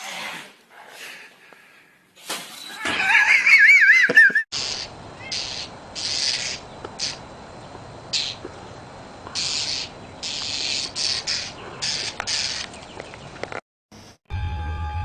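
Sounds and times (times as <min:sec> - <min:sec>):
animal hissing: 0:04.6 - 0:07.2, 0:08.1 - 0:08.4, 0:09.3 - 0:12.7.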